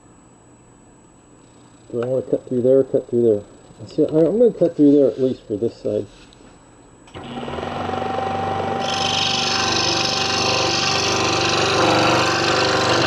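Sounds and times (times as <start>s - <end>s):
scroll saw running: 7.1s - 13.0s
saw blade cutting wood: 7.2s - 13.0s.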